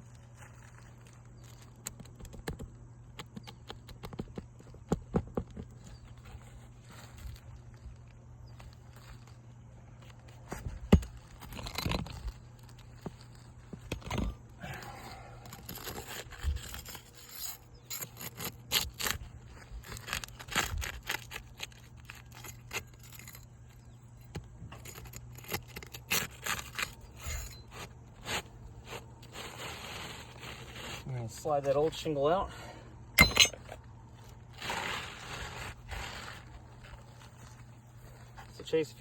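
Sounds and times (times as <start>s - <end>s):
hand tool scraping under shingles: 10.0s - 38.8s.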